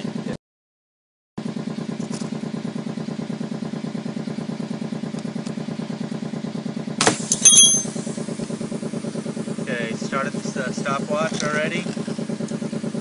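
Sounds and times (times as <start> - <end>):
sharp metallic clank: 7.0 - 8.2.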